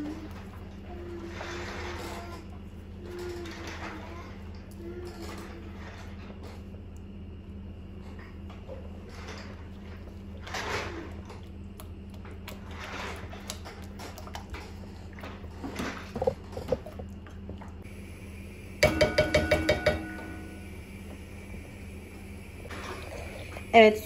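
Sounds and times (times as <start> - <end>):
steady low hum: 0.0 - 24.0
metal cookware scraping and knocking: 18.8 - 20.6.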